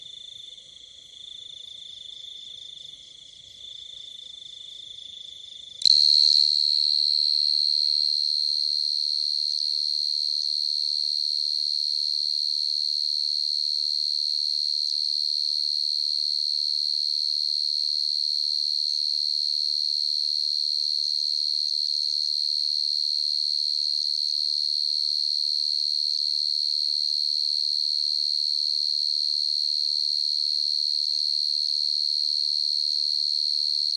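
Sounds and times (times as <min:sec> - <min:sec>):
cricket trilling: 0:05.8 - 0:07.7.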